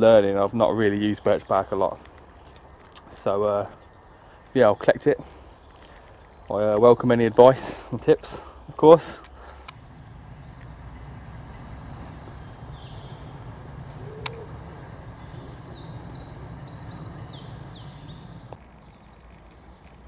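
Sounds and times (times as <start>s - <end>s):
low outdoor background noise: 0.0s - 20.0s
robin singing: 0.0s - 20.0s.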